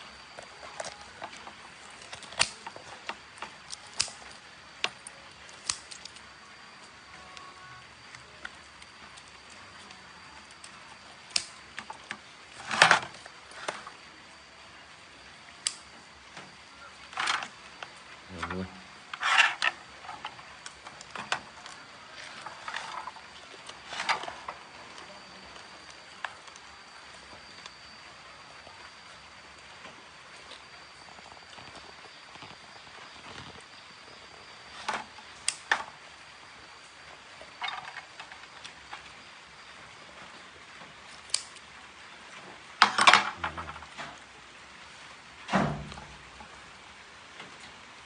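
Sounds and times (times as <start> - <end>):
crunchy rustles: 17.0 - 26.6.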